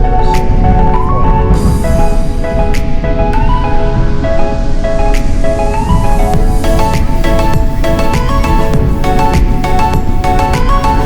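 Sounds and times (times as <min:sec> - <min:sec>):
held synth notes: 0:00.0 - 0:11.0
bright hiss: 0:01.5 - 0:03.7, 0:04.6 - 0:11.0.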